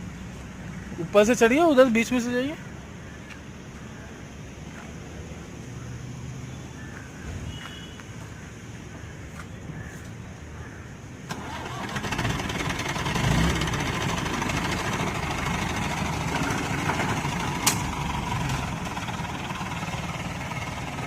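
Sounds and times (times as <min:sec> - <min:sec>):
diesel engine starting and running: 0:11.2 - 0:21.0.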